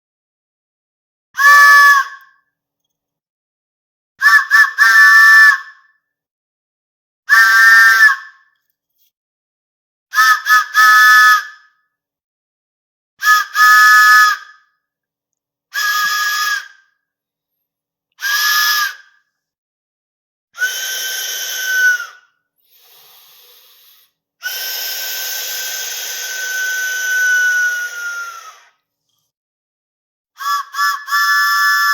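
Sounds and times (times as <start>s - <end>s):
cartoon train whistle toots: 1.4s - 2.3s, 4.2s - 5.8s, 7.3s - 8.4s, 10.1s - 11.6s, 13.2s - 14.5s, 15.8s - 16.8s, 18.2s - 19.1s, 20.6s - 28.8s, 30.4s - 31.9s
steam hissing: 22.7s - 28.3s.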